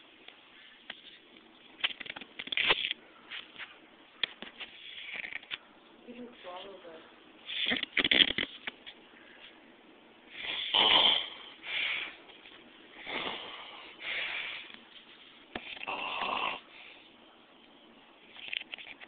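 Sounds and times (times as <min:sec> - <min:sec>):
man snoring loudly: 0:10.4 - 0:11.4, 0:15.9 - 0:16.7.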